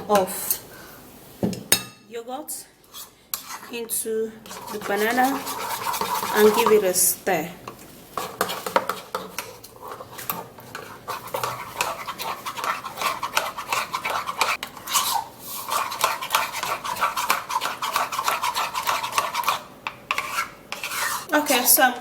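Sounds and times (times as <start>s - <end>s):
spoon scraping a bowl: 2.9s - 7.0s, 8.2s - 21.3s.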